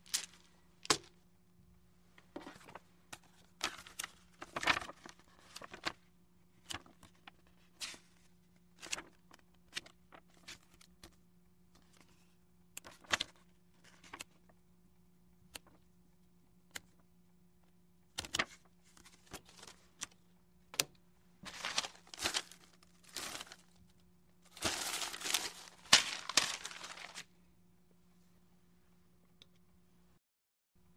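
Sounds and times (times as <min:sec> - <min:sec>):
crinkly rustling: 0:00.0 - 0:00.5, 0:21.4 - 0:23.8, 0:24.5 - 0:27.3.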